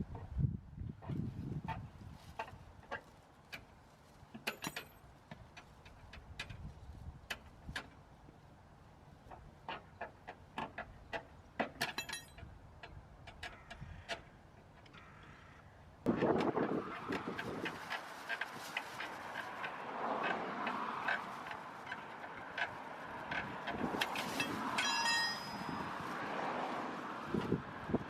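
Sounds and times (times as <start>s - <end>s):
metal tools clicking and knocking: 11.6s - 13.8s.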